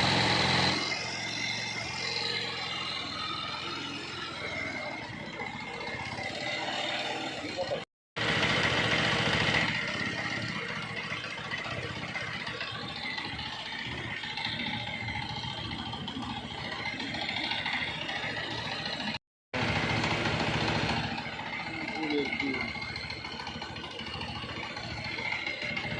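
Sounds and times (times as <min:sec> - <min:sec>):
motorcycle engine idling with rattle: 0:00.0 - 0:25.9.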